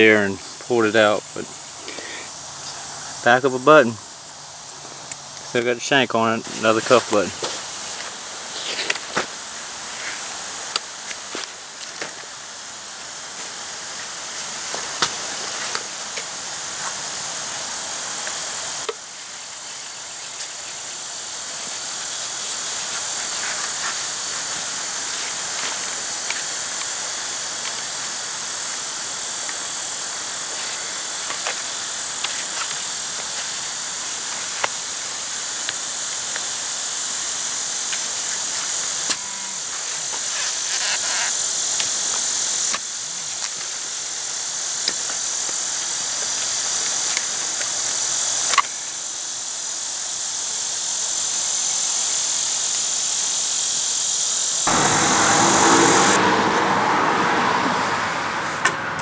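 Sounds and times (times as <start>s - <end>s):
insect chorus drone: 0.0s - 59.0s
loud rushing noise: 54.7s - 58.6s.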